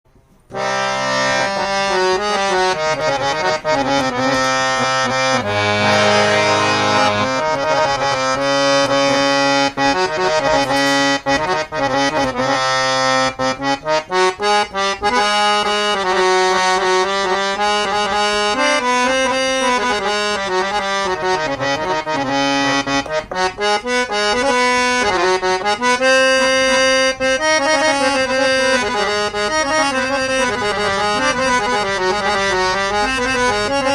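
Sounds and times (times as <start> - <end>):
harmonium melody over chords: 0.1 - 33.9.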